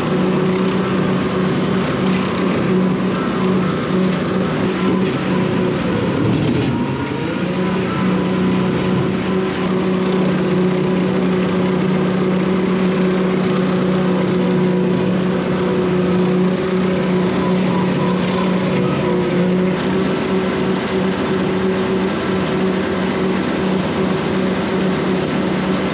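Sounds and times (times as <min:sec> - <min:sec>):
tractor engine under load: 0:00.0 - 0:25.9.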